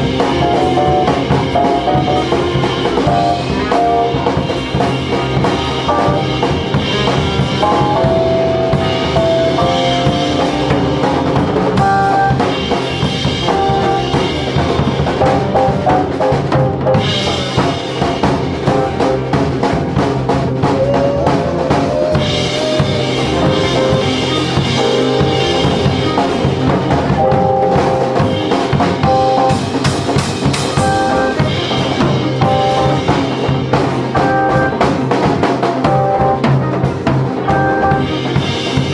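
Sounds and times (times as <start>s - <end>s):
sustained melodic instrument lines: 0.0s - 19.9s, 22.2s - 38.9s
drum kit beat: 0.0s - 38.9s.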